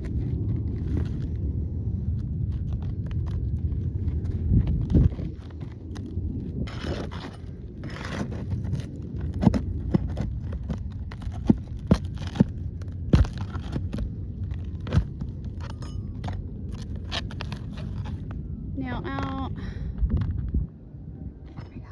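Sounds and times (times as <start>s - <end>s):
steady low rumble: 0.0s - 21.9s
roofing tool scraping shingles: 6.6s - 15.7s.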